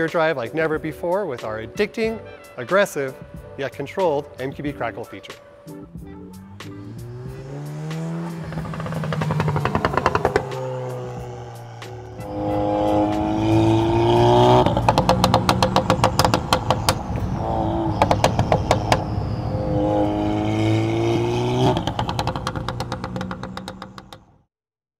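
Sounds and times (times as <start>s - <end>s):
car engine revving: 1.7s - 24.3s
exhaust crackling and popping: 5.9s - 24.4s.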